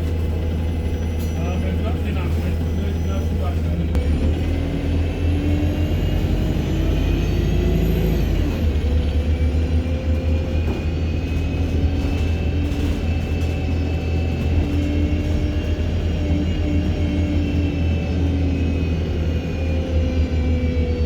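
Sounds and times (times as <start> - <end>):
bus engine rumble: 0.0 - 21.0
turbocharger whine: 3.7 - 12.7, 13.6 - 21.0.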